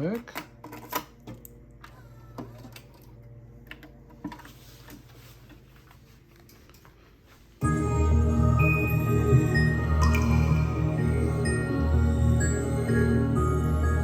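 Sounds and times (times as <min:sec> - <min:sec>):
faint low motor hum: 0:00.0 - 0:14.0
music playback from tape: 0:07.3 - 0:14.0.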